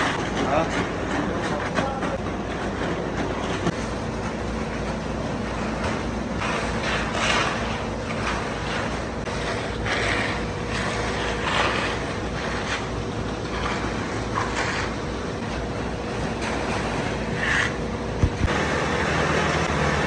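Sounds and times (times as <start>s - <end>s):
heavy machinery humming: 0.0s - 20.0s
rushing scraping bursts: 5.9s - 15.4s.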